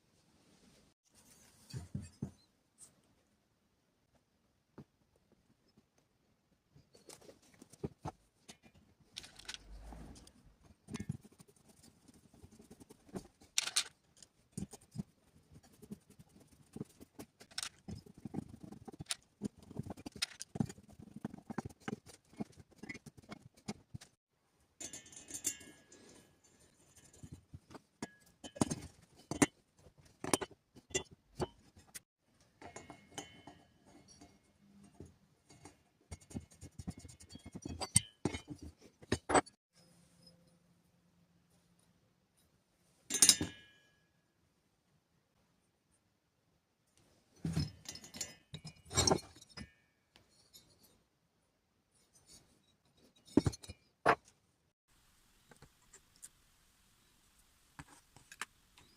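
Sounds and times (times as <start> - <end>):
tools clicking and tapping: 10.9 - 24.2, 24.8 - 39.6.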